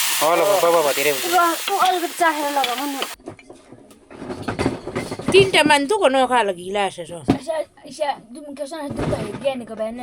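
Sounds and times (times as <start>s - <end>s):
gravy sizzling in a pot: 0.0s - 3.2s
voices: 0.2s - 3.2s.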